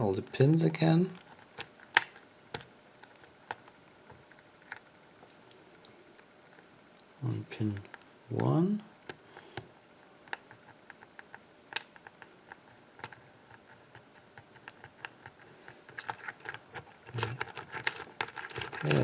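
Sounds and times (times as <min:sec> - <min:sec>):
lock pick clicking in a lock: 0:15.9 - 0:19.0.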